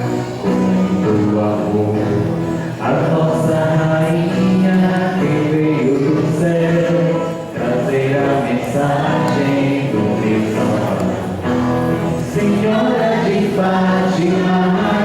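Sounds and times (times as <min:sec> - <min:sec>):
voices singing a hymn: 0:00.0 - 0:15.0.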